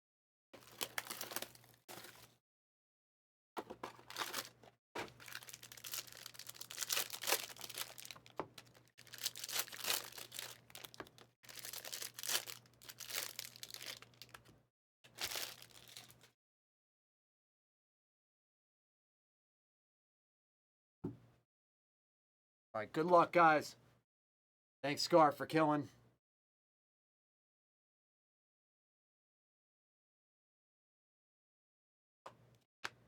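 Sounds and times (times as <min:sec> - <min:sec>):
plastic wrapping tearing and crinkling: 0:00.6 - 0:02.2, 0:04.0 - 0:14.4, 0:15.1 - 0:16.2.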